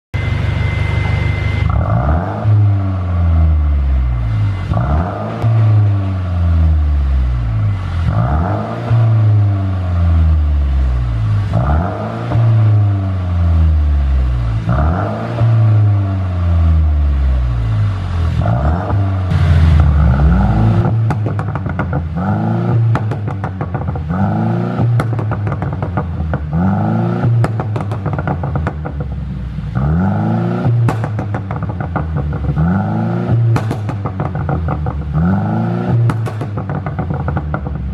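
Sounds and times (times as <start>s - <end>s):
car engine revving: 0.2s - 37.9s
exhaust crackles and pops: 17.1s - 37.9s.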